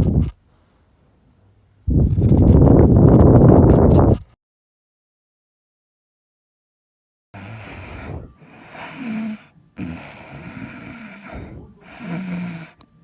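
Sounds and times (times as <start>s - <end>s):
wheezing breaths: 7.4s - 12.8s.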